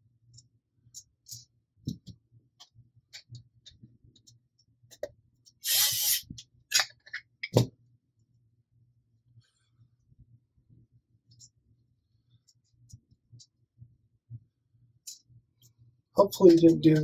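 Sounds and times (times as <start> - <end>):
short scrape: 5.6 - 6.3.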